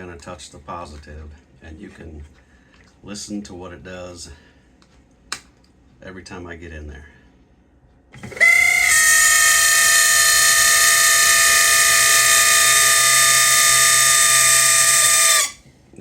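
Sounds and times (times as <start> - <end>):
blower motor squealing: 8.2 - 15.6.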